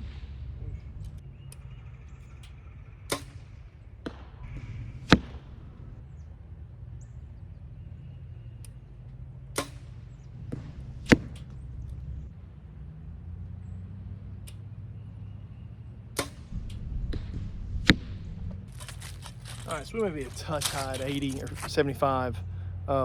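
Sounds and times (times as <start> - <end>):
wind rumble on microphone: 16.3 - 22.6.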